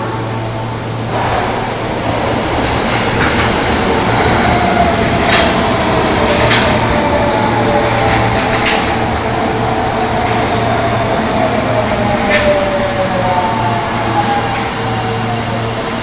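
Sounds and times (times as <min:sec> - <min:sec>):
wheels rumbling on rail: 0:00.0 - 0:16.0
wheels clicking over rail joints: 0:05.0 - 0:09.4.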